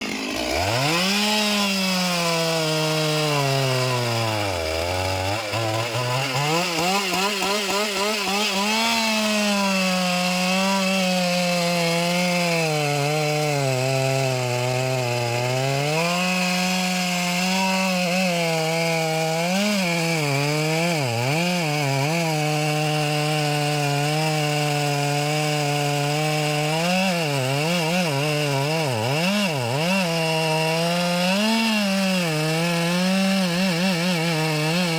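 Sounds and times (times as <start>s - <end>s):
chainsaw cutting wood: 0.0s - 34.9s.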